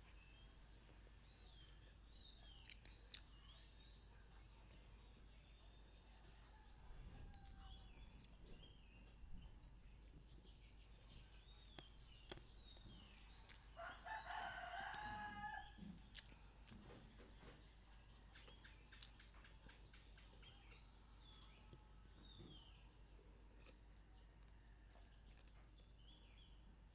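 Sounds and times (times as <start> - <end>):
faint bird chirps: 0.0 - 26.9
rooster crowing: 6.1 - 8.0, 13.7 - 16.0.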